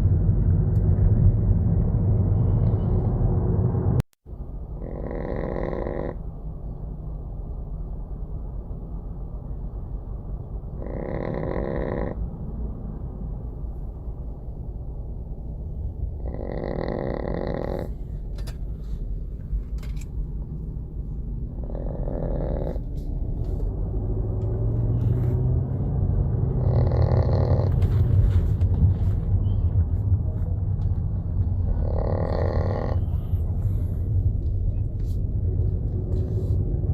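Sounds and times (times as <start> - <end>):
steady low rumble: 0.0 - 36.9
small dog snoring: 4.8 - 6.2, 10.8 - 12.2, 16.2 - 18.0, 21.6 - 22.9, 26.4 - 27.8, 31.7 - 33.8.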